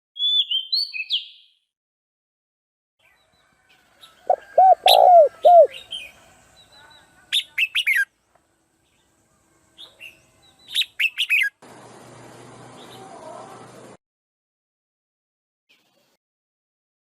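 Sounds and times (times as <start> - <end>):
birds calling: 4.1 - 6.2.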